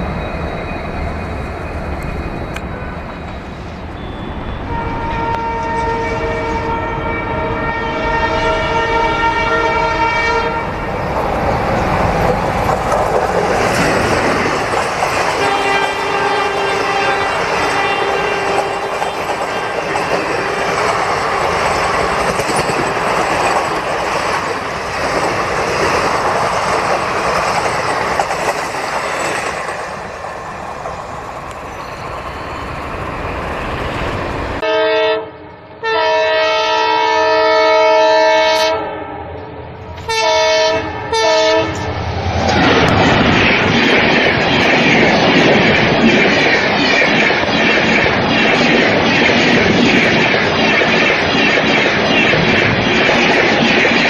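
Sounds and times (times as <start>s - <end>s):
train wheels on rails: 0.0s - 34.6s, 39.9s - 54.0s
locomotive horn blasts: 4.0s - 10.8s, 15.4s - 19.2s, 34.6s - 39.2s, 40.0s - 41.9s.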